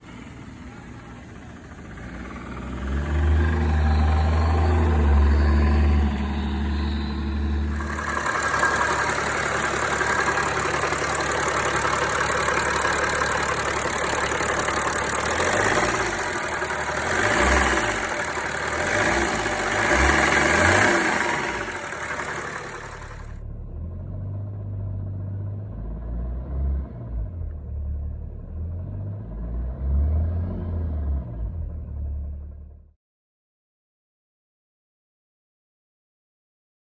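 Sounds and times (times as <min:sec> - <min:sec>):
diesel engine running: 0:00.0 - 0:29.6.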